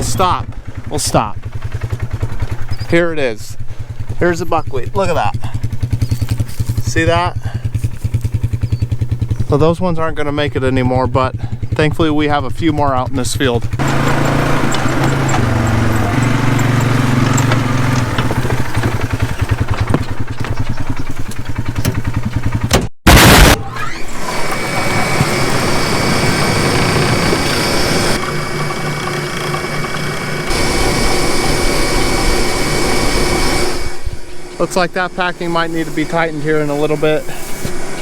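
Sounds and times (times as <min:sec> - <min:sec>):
vehicle engine running: 0:00.0 - 0:23.6, 0:24.3 - 0:38.0
brief loud burst: 0:23.1 - 0:23.8
well pump with high whine: 0:23.2 - 0:38.0.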